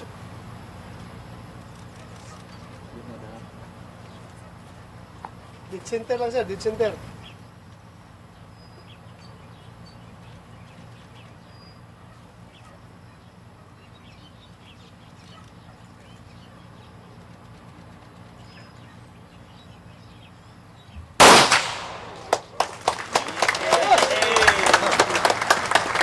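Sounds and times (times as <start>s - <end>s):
rifle shot: 21.2s - 22.6s.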